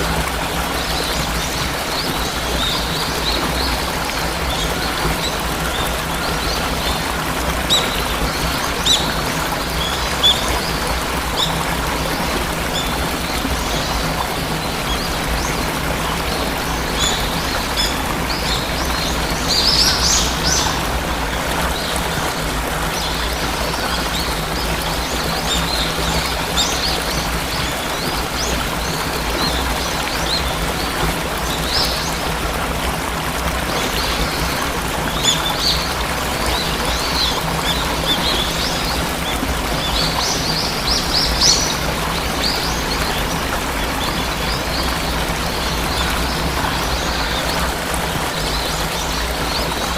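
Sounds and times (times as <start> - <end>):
waterfall rushing: 0.0 - 49.9
small birds chirping: 0.8 - 32.2.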